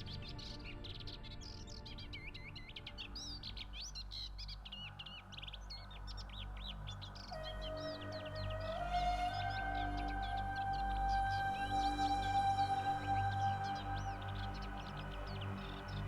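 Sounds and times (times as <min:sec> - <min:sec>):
chirping birdsong: 0:00.0 - 0:16.0
low steady drone: 0:06.5 - 0:16.0.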